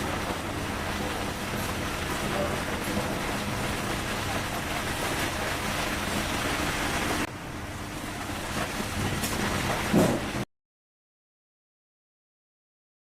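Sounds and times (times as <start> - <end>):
welding machine hum: 0.0 - 10.4.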